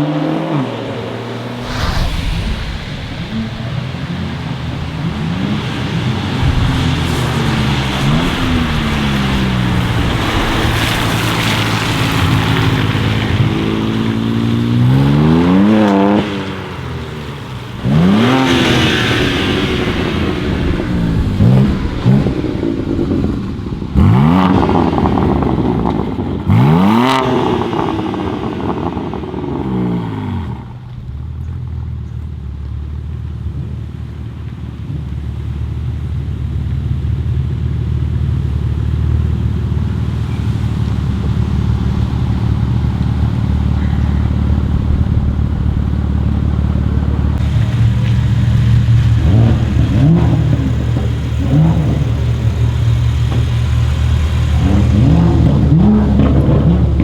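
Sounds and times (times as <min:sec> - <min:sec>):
car engine revving: 0:00.0 - 0:31.2, 0:38.4 - 0:57.0
exhaust crackles: 0:00.7 - 0:33.0, 0:33.6 - 0:57.0.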